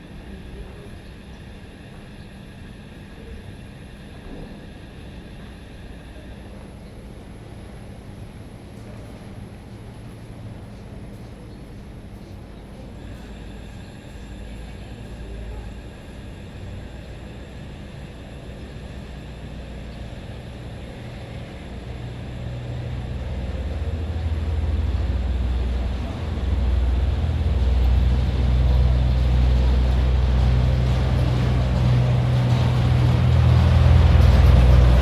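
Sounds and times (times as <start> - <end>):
engine humming: 18.6 - 35.0.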